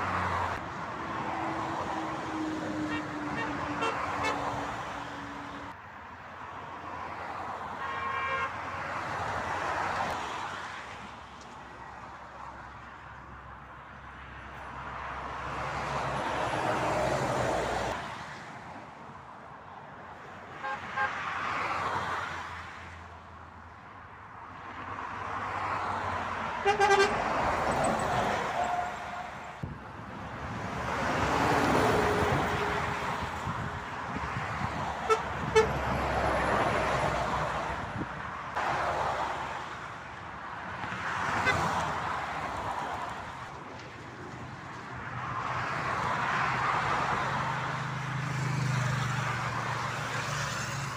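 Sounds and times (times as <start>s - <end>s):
motorway traffic passing: 0.0s - 50.9s
vehicle horn toots: 2.9s - 4.5s, 7.8s - 8.6s, 26.6s - 27.3s, 28.5s - 29.4s, 35.0s - 35.8s.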